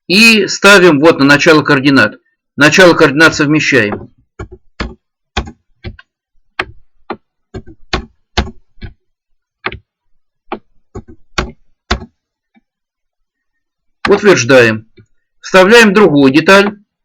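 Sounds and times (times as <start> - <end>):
computer mouse clicking: 9.6 - 9.9, 10.5 - 12.7.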